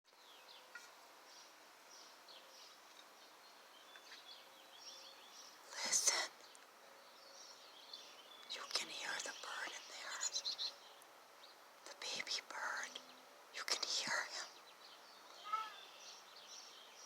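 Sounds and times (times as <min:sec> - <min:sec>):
small birds chirping: 0:00.1 - 0:17.0.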